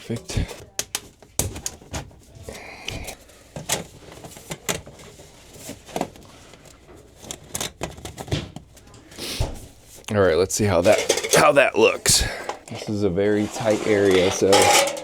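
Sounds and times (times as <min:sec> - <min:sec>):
sheet-metal pipe clanking: 0:10.8 - 0:12.8, 0:13.5 - 0:15.0.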